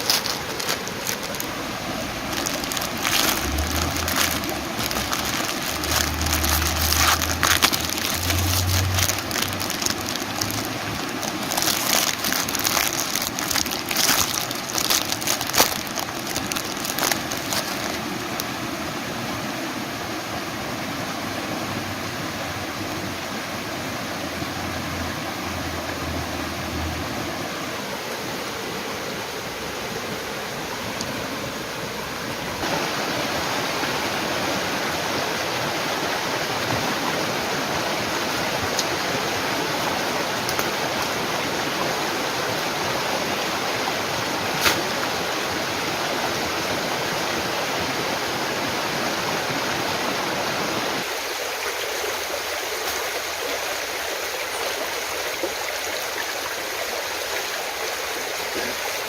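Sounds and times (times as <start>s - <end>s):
flowing water rushing: 0.0s - 59.0s.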